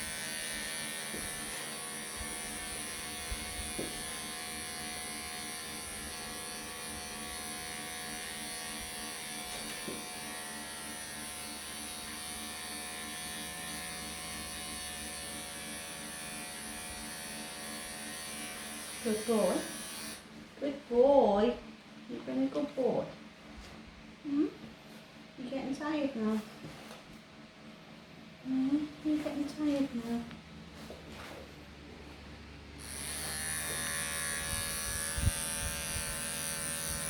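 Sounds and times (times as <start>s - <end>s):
electric clippers buzzing: 0.0s - 20.4s, 28.8s - 37.0s.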